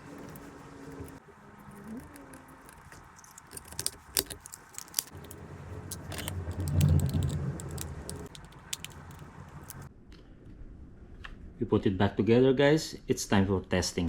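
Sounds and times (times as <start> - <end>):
low rumble: 4.9 - 11.7.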